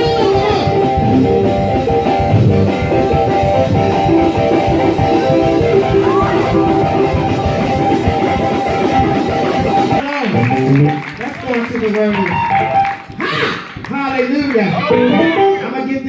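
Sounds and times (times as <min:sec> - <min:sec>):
sustained keyboard chord: 0:00.0 - 0:10.8
electric guitar: 0:00.0 - 0:13.9, 0:14.7 - 0:16.0
drums: 0:00.0 - 0:16.0.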